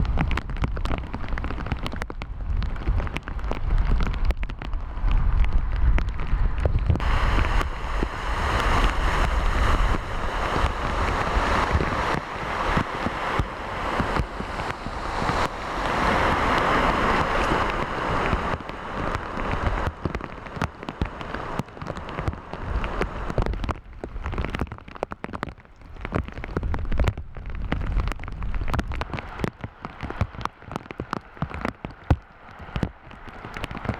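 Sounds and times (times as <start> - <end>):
rain falling: 0.0 - 33.9
wind rumble on microphone: 0.0 - 33.9.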